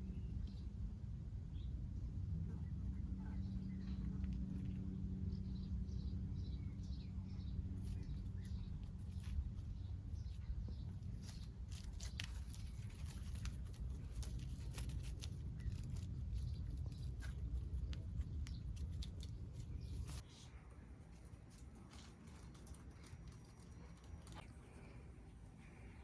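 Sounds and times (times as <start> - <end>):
steady low rumble: 0.0 - 26.0
claws scratching on bark: 7.7 - 20.3.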